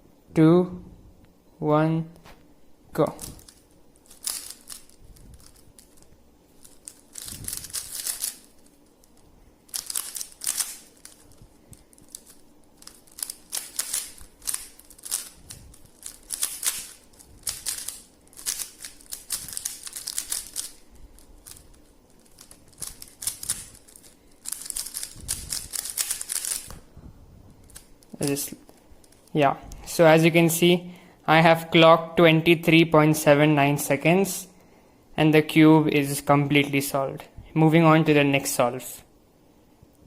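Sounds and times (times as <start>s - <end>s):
plastic puzzle cube layers clicking: 9.7s - 11.2s, 12.1s - 15.3s, 16.0s - 20.8s.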